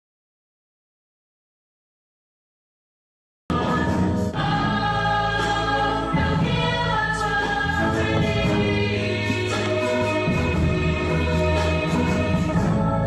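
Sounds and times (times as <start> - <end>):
song with sung vocals: 3.5 - 13.0.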